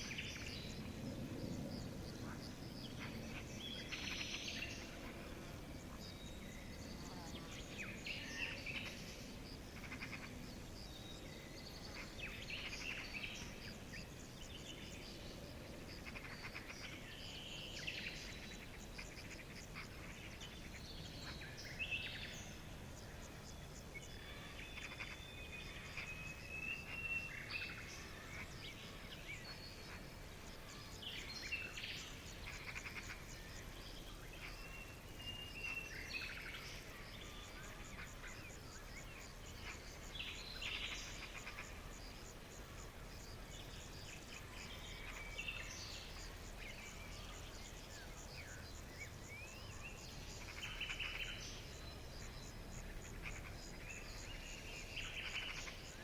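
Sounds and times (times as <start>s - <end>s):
steady background hiss: 0.0s - 56.0s
birds chirping and calling: 43.6s - 56.0s.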